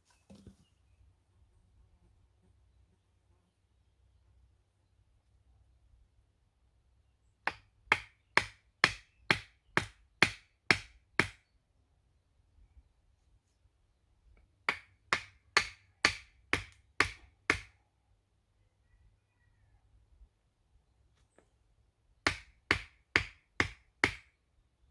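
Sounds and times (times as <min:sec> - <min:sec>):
sharp strikes on wood: 0:07.5 - 0:11.4, 0:14.7 - 0:17.7, 0:22.3 - 0:24.3.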